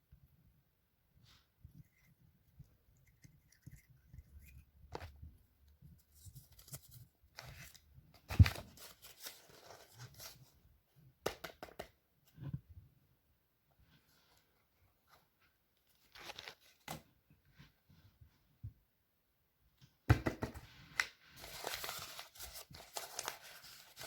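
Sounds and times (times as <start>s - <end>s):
packaging rustling and crinkling: 21.4s - 24.0s.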